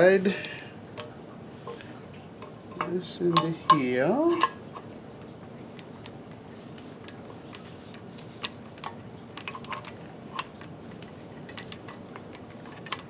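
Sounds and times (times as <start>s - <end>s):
steady background hiss: 0.0s - 13.0s
machine parts clicking and tapping: 6.8s - 13.0s.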